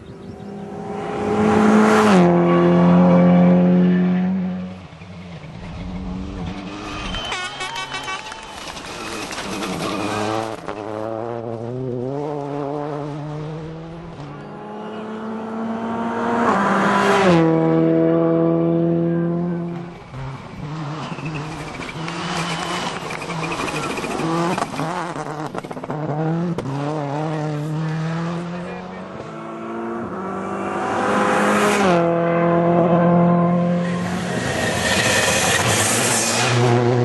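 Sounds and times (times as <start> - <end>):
rally car engine revving: 0.1 - 37.0.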